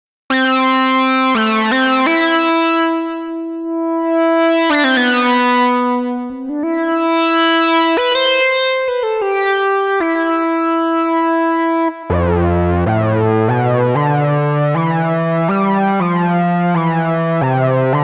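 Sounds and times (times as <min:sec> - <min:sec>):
synthesizer held notes: 0:04.2 - 0:10.4.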